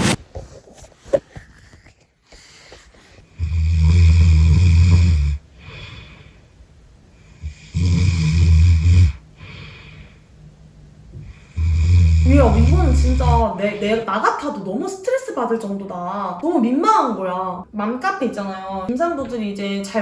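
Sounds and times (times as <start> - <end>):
woman snoring heavily: 3.4 - 6.3, 7.4 - 10.0, 11.5 - 13.6.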